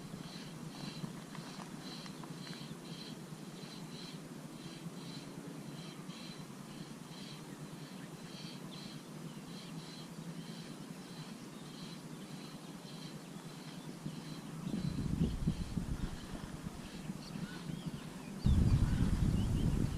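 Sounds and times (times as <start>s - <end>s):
low hum: 0.0s - 19.9s
low rumble: 18.4s - 19.9s.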